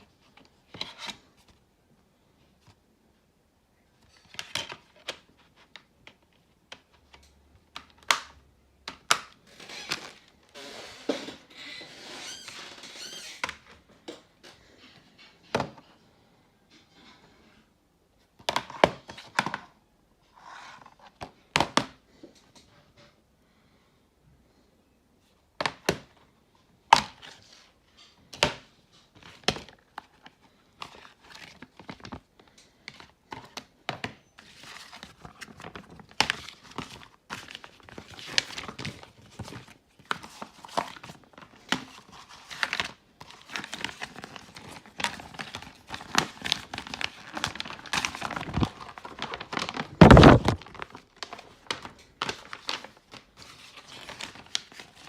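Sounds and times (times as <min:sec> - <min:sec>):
wrapping crinkling and tearing: 0:34.4 - 0:55.0.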